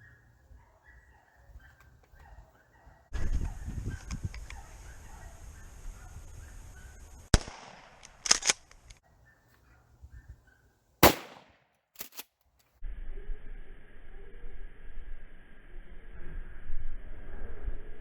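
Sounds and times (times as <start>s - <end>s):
shotgun shots: 7.3s - 8.0s, 11.0s - 12.2s.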